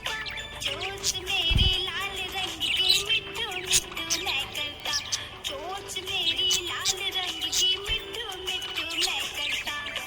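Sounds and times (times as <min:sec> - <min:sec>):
budgies chirping and warbling: 0:00.0 - 0:10.0
song with singing: 0:00.0 - 0:10.0.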